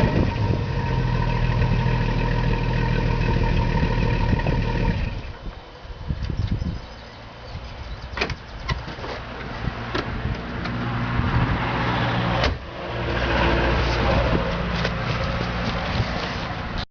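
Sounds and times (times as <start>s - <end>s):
car engine running: 0.0s - 5.4s.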